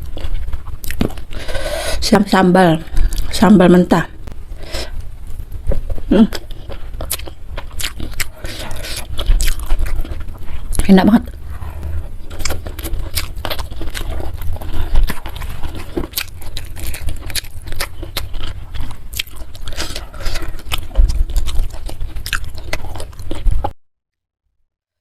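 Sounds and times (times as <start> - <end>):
person chewing food: 0.0 - 1.7, 4.6 - 23.8
low rumble: 7.4 - 21.8.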